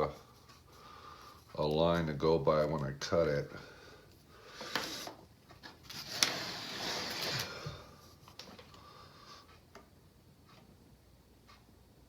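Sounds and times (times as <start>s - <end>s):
scraping on workbench: 6.0s - 7.7s.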